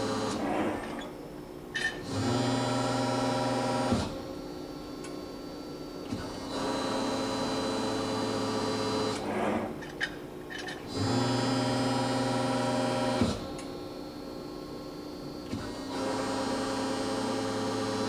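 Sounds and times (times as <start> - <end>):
hydraulic press humming: 5.9 - 18.0.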